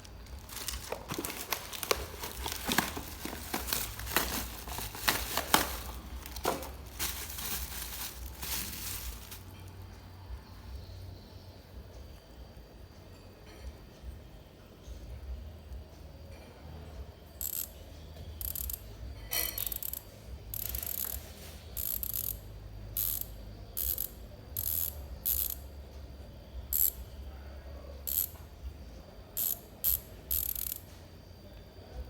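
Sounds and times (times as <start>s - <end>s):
bicycle freehub ratchet buzzing: 17.4s - 17.8s, 18.4s - 21.2s, 21.8s - 25.7s, 26.7s - 27.0s, 28.1s - 28.4s, 29.4s - 30.9s.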